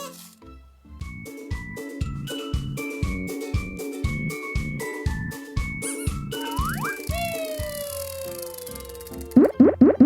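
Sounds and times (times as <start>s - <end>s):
light children's music: 0.0s - 10.0s
cartoon whistle sliding down: 6.4s - 8.8s.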